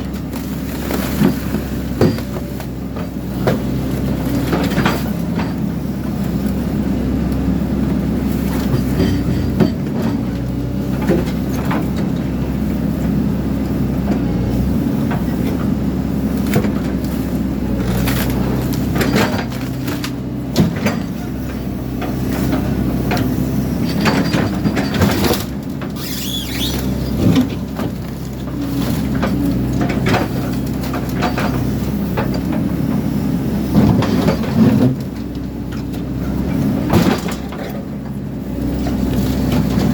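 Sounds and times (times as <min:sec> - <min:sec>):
excavator diesel engine: 0:00.0 - 0:39.9
metal clanks and scraping: 0:08.5 - 0:10.3, 0:17.8 - 0:32.7.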